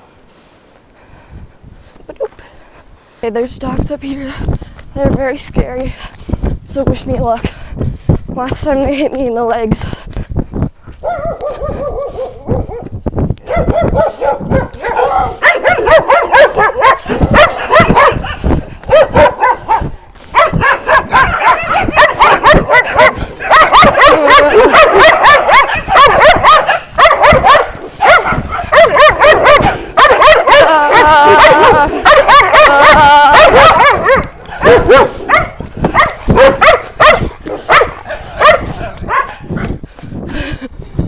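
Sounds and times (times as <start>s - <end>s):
dogs barking and yelping: 10.9s - 39.8s.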